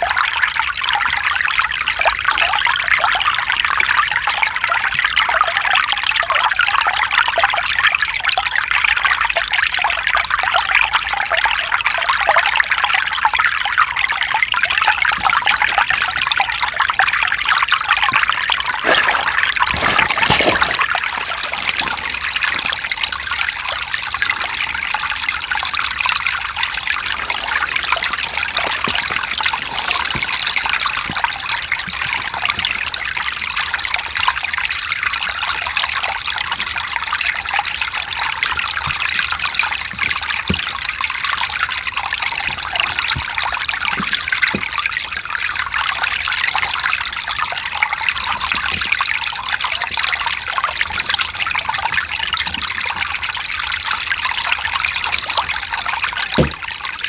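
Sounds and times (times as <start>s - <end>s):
stream flowing over rocks: 15.2s - 34.2s, 37.8s - 57.0s.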